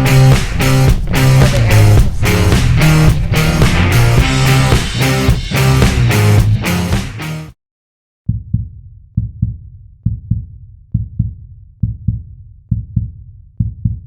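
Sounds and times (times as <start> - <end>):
heartbeat thumps: 0.0 - 6.6, 8.3 - 14.0
rock music: 0.0 - 7.6.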